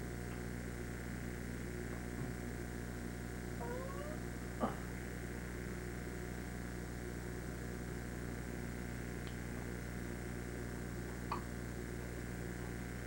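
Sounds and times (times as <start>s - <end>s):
electrical hum: 0.0s - 13.0s.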